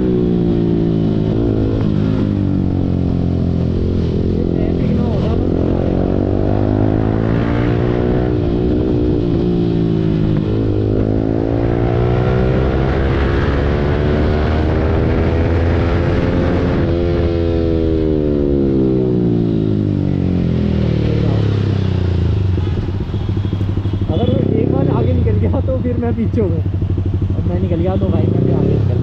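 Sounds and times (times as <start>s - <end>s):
motorcycle engine revving: 0.0s - 29.0s.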